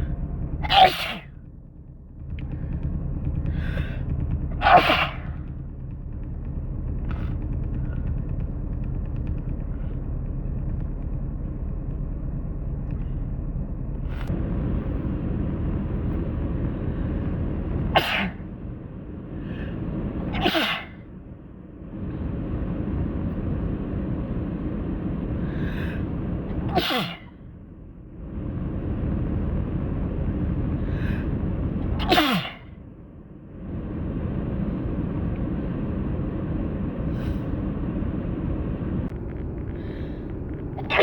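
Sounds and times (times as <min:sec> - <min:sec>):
steady low rumble: 0:00.0 - 0:41.0
person sneezing: 0:04.6 - 0:05.2, 0:18.0 - 0:18.4, 0:20.3 - 0:21.0, 0:26.6 - 0:27.3, 0:32.0 - 0:32.7.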